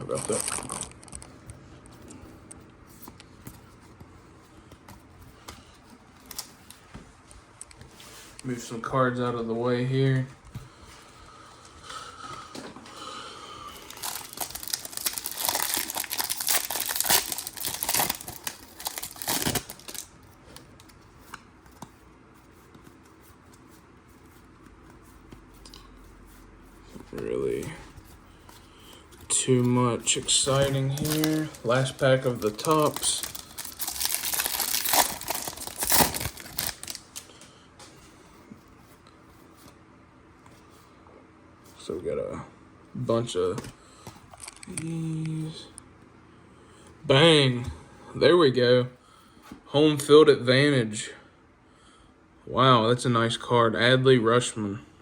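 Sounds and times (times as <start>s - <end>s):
foil wrapper crinkling and tearing: 0.0s - 1.3s, 6.2s - 6.5s, 13.8s - 20.2s, 30.0s - 37.3s.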